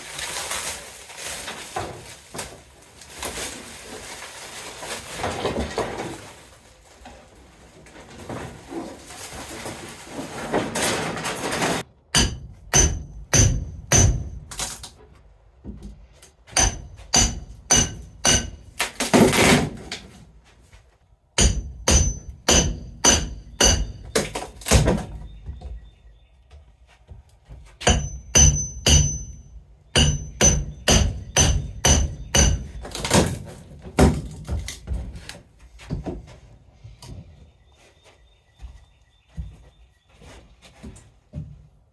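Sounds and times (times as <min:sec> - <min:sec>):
hammer blows on metal and wood: 0:27.8 - 0:29.4, 0:30.0 - 0:32.8.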